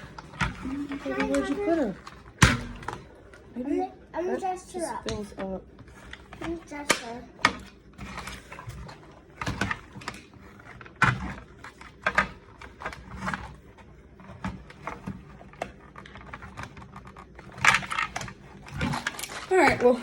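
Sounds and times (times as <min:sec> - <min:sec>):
plastic pieces clattering: 0:14.3 - 0:20.0.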